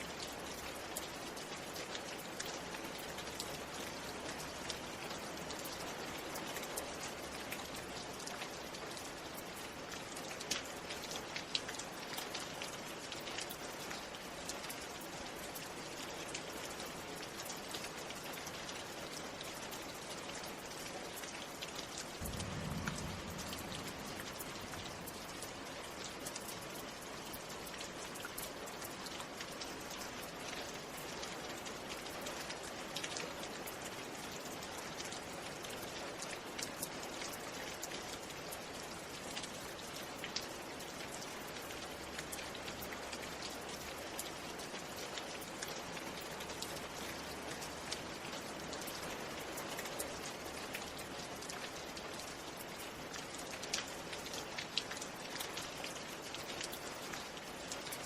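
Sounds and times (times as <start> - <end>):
raindrops ticking on hard surface: 0.0 - 58.0
steady rain falling: 0.0 - 58.0
low rumble: 22.2 - 26.2.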